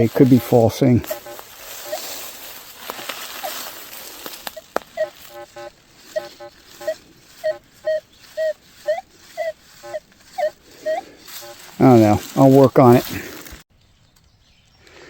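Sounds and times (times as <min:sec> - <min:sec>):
person talking: 0:00.0 - 0:01.4, 0:10.9 - 0:13.4
metal detector warbling tones: 0:00.4 - 0:02.2, 0:04.5 - 0:12.0.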